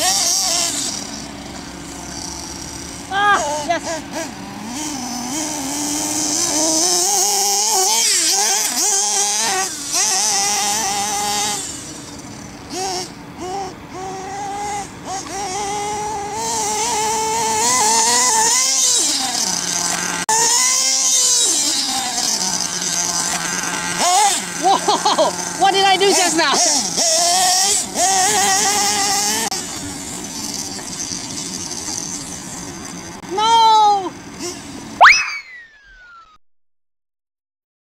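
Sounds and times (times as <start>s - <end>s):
model buggy engine revving: 0.0s - 36.2s.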